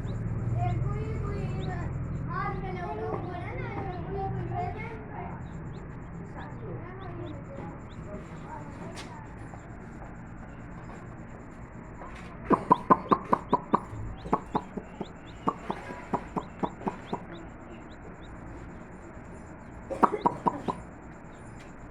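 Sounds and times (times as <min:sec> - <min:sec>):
chicken clucking: 0:12.5 - 0:18.7, 0:19.9 - 0:20.8.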